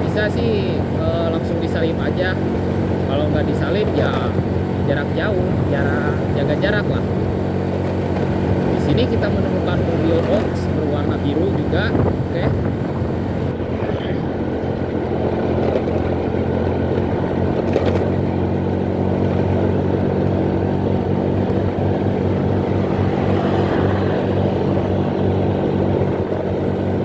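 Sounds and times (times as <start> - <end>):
motorcycle engine running: 0.0 - 27.0
rushing noise: 21.1 - 26.6.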